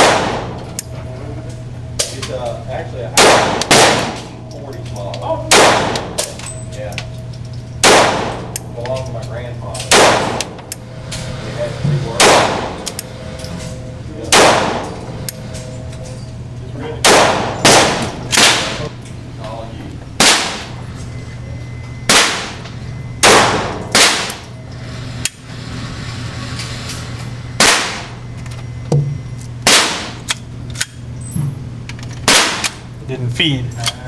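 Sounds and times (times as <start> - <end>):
pistol shots with echo: 0.0 - 0.6, 3.1 - 4.4, 5.5 - 6.4, 7.8 - 8.6, 9.8 - 10.6, 12.2 - 13.0, 14.3 - 15.2, 17.0 - 18.9, 20.2 - 20.8, 22.1 - 22.6, 23.2 - 24.4, 27.6 - 28.1, 29.6 - 30.3, 32.2 - 32.8
steady low hum: 0.0 - 34.0.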